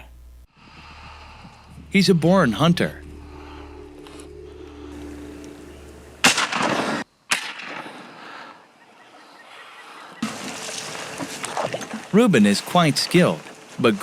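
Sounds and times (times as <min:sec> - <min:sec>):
low steady hum: 0:00.0 - 0:07.0.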